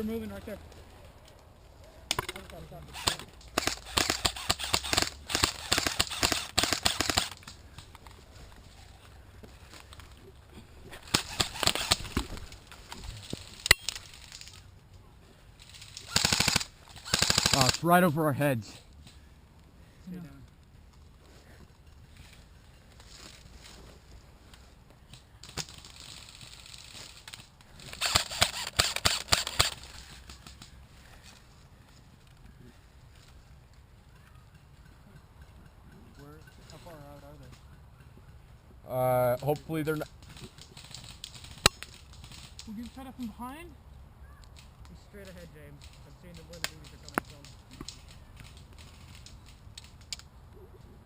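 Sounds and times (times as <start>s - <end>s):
airsoft guns firing: 2.9s - 7.5s, 11.1s - 12.2s, 16.0s - 17.8s, 27.9s - 29.9s
airsoft gun shots: 3.0s - 7.4s.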